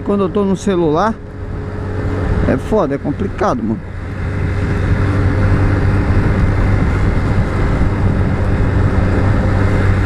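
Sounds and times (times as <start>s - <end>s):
motorcycle engine running: 0.0s - 10.0s
wind rushing over microphone: 0.0s - 10.0s.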